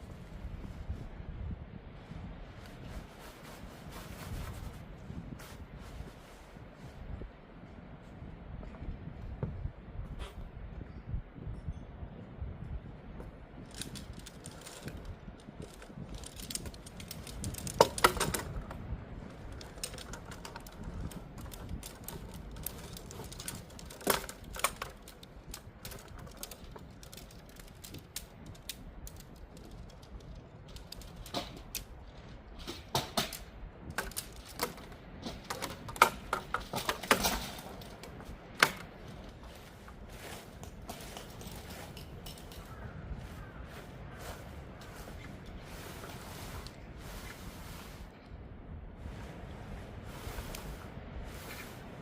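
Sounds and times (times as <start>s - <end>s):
low steady background noise: 0.0s - 52.0s
hard objects clicking and clattering: 13.6s - 31.9s, 32.6s - 39.4s.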